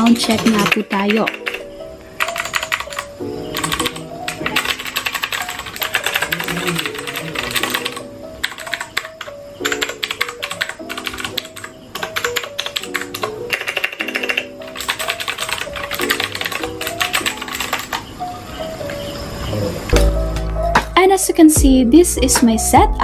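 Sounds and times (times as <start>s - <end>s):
mechanical keyboard typing: 0.0s - 1.6s, 2.2s - 18.1s
background music: 0.0s - 23.0s.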